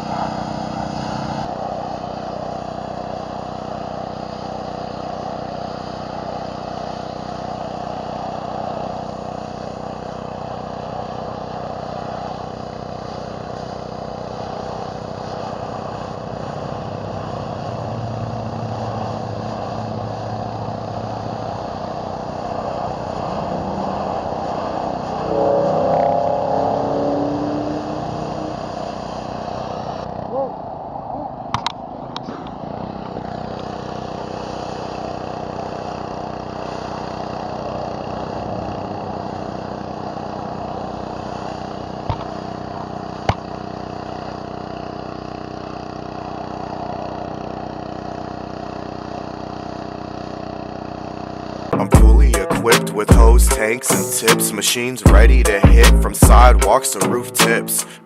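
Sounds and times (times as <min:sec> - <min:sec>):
pressure washer engine drone: 0:00.0 - 0:58.0
water spray hissing on concrete: 0:13.0 - 0:16.5
brief wavering pitch sound: 0:25.1 - 0:28.5.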